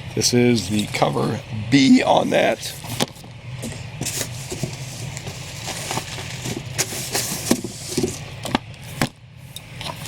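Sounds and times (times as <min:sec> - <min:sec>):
steady low hum: 0:00.0 - 0:10.0
paper and bag rustling: 0:02.6 - 0:08.3.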